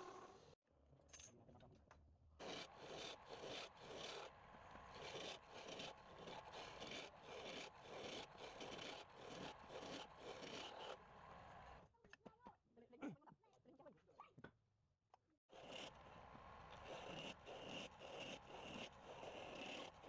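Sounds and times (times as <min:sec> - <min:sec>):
hand tool scraping wood: 0:05.0 - 0:11.0, 0:16.8 - 0:20.0.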